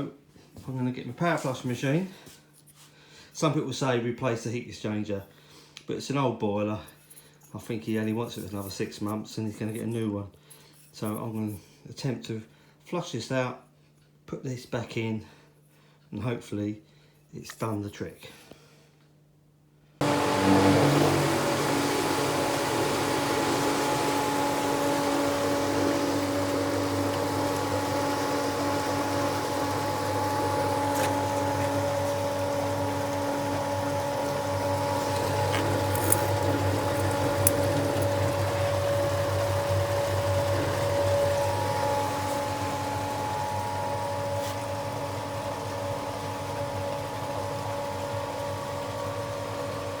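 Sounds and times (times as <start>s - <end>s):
water flowing: 20.0s - 48.0s
pump humming: 20.0s - 50.0s.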